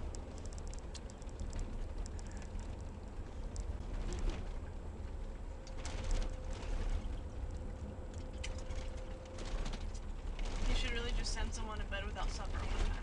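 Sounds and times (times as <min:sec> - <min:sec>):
faint steady hum: 0:00.0 - 0:13.0
vehicle interior rumble: 0:00.0 - 0:13.0.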